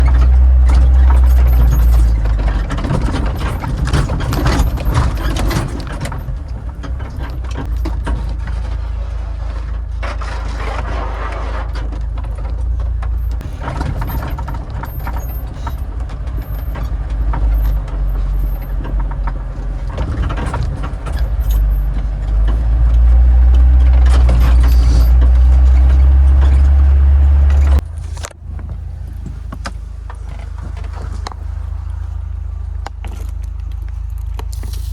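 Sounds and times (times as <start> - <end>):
knocks and rattles: 0.0 - 34.4
low engine drone: 13.1 - 34.9.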